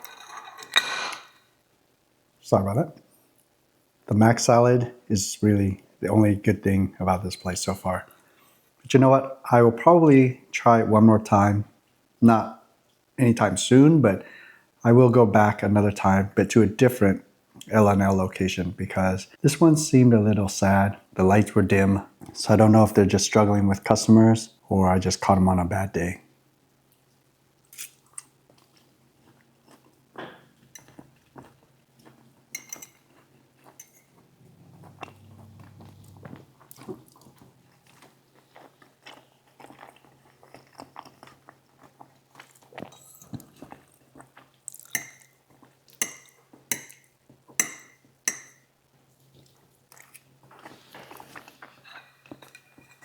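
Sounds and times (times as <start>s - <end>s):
utensils clinking on a dish: 0.0s - 1.4s, 32.6s - 33.1s, 51.8s - 53.0s
person chewing food: 27.9s - 47.6s, 49.2s - 52.8s.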